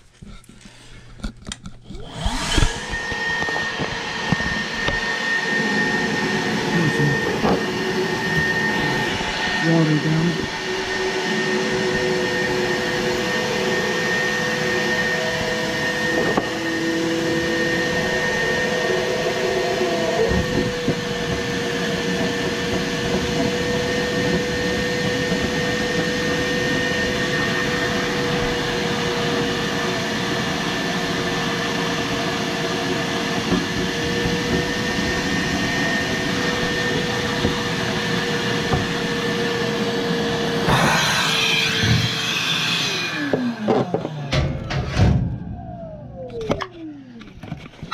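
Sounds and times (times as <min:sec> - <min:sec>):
shop vacuum running: 0:00.3 - 0:47.9.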